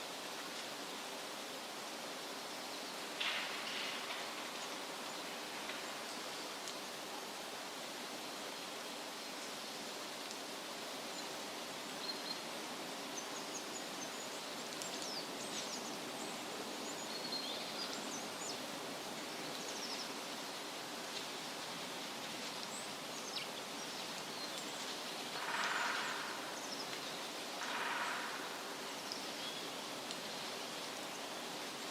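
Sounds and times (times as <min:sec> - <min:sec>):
steady rushing hiss: 0:00.0 - 0:31.9.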